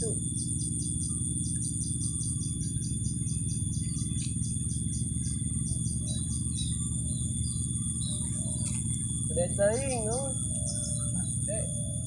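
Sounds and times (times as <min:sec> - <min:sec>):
insects and birds trilling: 0:00.0 - 0:12.0
low drone: 0:00.0 - 0:12.0
rhythmic high-pitched chirping: 0:00.0 - 0:12.0.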